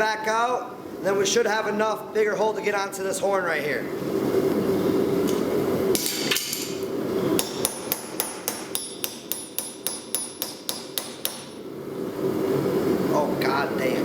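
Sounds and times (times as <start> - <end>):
hammer ringing on anvil: 7.4 - 11.6.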